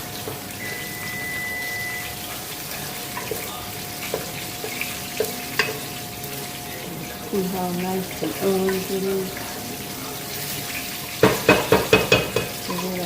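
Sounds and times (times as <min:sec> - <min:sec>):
food sizzling in oil: 0:00.0 - 0:13.0.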